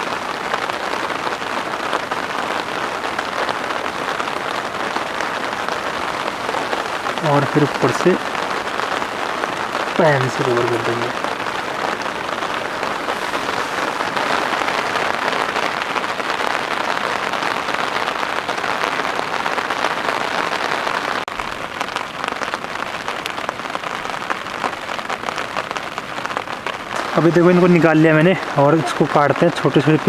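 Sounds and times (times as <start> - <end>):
heavy rain falling: 0.0 - 30.0.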